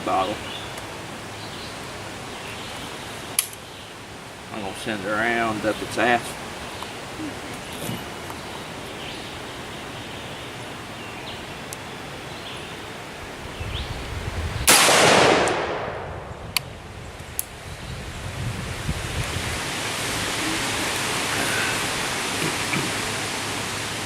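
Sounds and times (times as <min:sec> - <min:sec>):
wind-like noise: 0:00.0 - 0:24.0
rifle shot echoing: 0:14.7 - 0:16.4.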